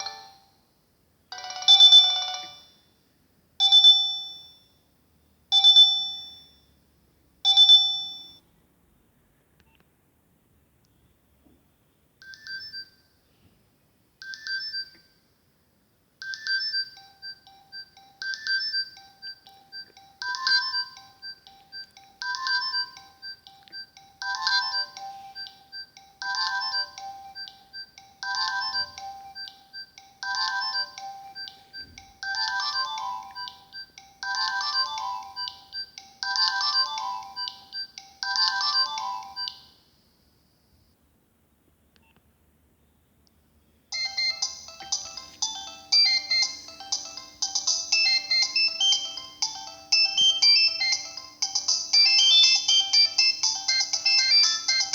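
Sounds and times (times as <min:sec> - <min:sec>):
polyphonic phone ringtone: 0:00.0 - 0:00.6, 0:01.3 - 0:02.7, 0:03.6 - 0:04.5, 0:05.5 - 0:06.5, 0:07.5 - 0:08.4, 0:12.2 - 0:13.0, 0:14.2 - 0:15.0, 0:16.2 - 0:40.1, 0:44.0 - 0:54.9.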